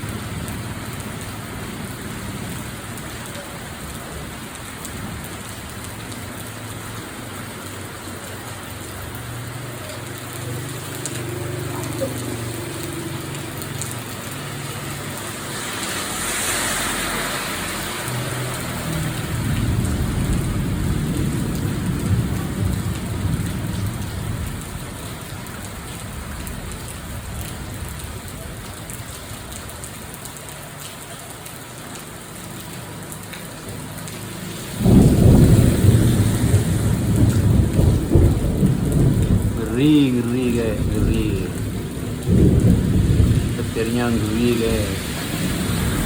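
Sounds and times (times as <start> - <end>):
heavy rain: 0.0 - 46.0
thunder rumbling: 19.0 - 29.1, 34.8 - 46.0
loud thunderclap: 34.8 - 39.8, 40.8 - 44.3.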